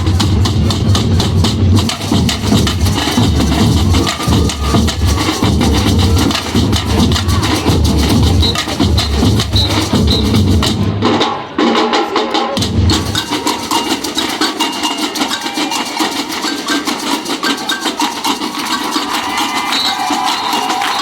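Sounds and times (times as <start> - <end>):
deep bass drums: 0.0 - 11.0
drum ensemble playing fast rhythm: 0.0 - 21.0.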